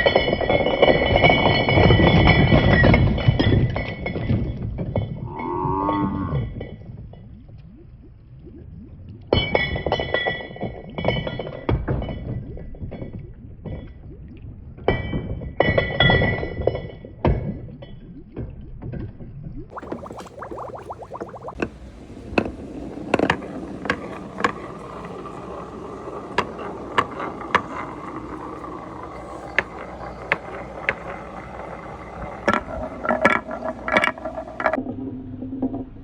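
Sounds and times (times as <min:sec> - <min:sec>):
marbles rolling and clattering: 0:00.0 - 0:07.7, 0:19.7 - 0:34.8
clear ringing tones: 0:19.7 - 0:34.8
wavering gliding tone: 0:19.7 - 0:34.8.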